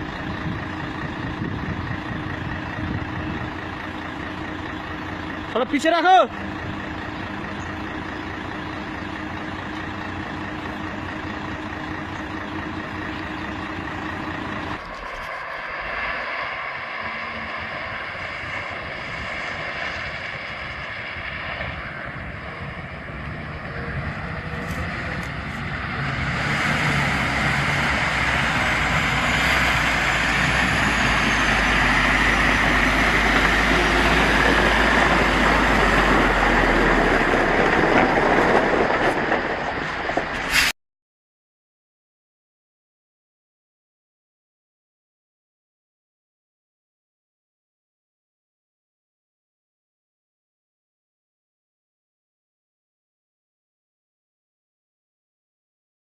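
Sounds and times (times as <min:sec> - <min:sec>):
heavy construction machinery engine: 0:00.0 - 0:40.7.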